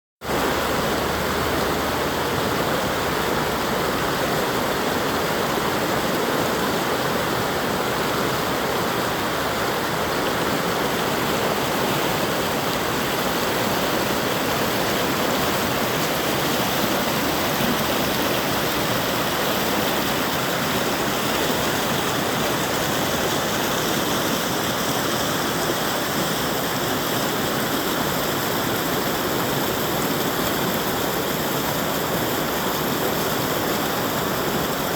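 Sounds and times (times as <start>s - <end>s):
river water rushing over rocks: 0.2s - 34.9s.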